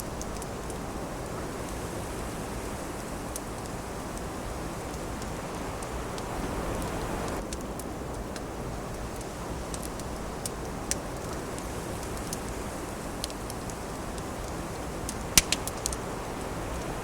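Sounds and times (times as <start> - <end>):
wood fire crackling and popping: 0.0 - 17.0
wind rushing: 5.4 - 7.4.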